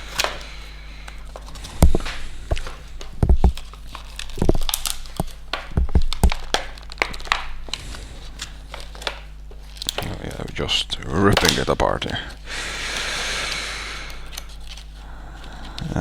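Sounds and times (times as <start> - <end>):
packaging crinkling and tearing: 0.0 - 16.0
sharp knocks and thumps: 1.6 - 3.7, 4.3 - 7.5.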